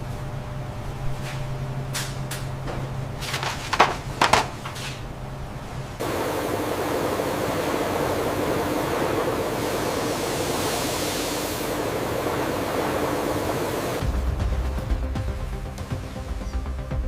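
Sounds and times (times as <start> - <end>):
factory machinery hum: 0.0 - 17.0
clattering knocks: 2.7 - 5.0
loud steady rushing noise: 3.0 - 17.0.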